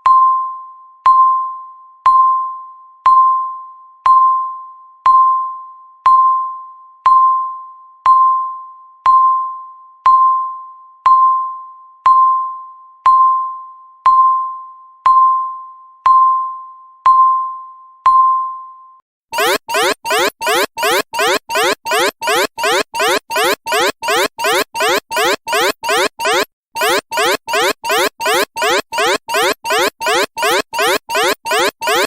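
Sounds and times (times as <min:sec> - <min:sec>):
rising electronic alarm: 0:19.4 - 0:32.0
timer beeps: 0:19.4 - 0:32.0.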